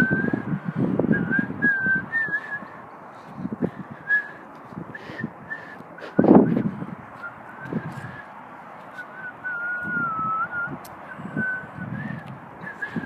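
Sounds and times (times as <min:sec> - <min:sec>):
person whistling a tune: 0:00.0 - 0:00.5, 0:01.1 - 0:02.7, 0:09.0 - 0:13.0.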